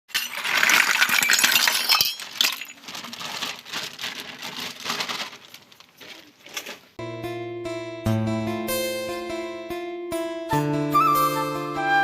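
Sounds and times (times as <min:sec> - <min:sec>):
small toy pieces clinking: 0:00.1 - 0:03.6.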